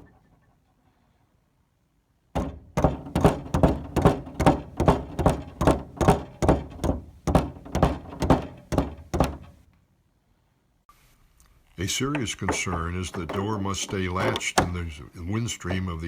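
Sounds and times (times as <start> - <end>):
steady knocks: 2.3 - 9.7, 12.1 - 15.0.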